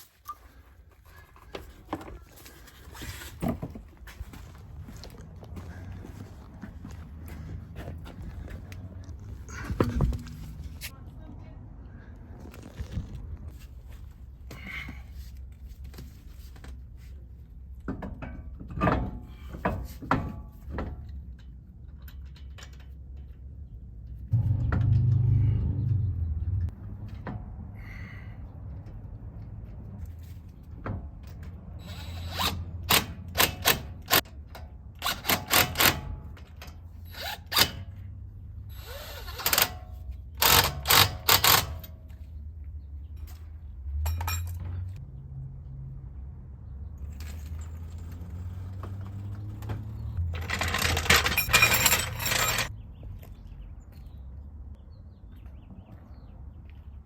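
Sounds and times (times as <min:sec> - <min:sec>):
metal clanks and knocks: 0:09.2 - 0:10.9, 0:17.8 - 0:23.6, 0:24.3 - 0:27.6, 0:43.2 - 0:45.0, 0:47.0 - 0:52.8.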